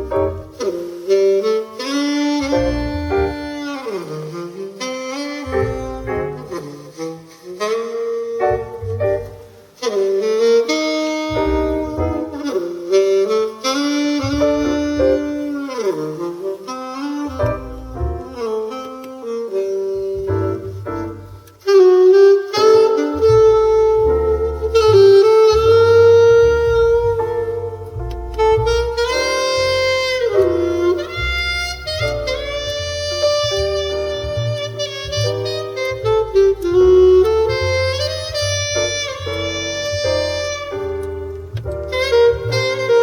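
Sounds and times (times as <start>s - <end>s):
low bass notes: 0.0s - 0.8s, 2.4s - 4.0s, 5.4s - 6.7s, 8.2s - 9.8s, 11.2s - 12.6s, 14.1s - 15.7s, 17.2s - 18.7s, 19.9s - 21.7s, 22.6s - 43.0s
jazz trio music: 0.0s - 43.0s
saxophone melody: 0.0s - 43.0s.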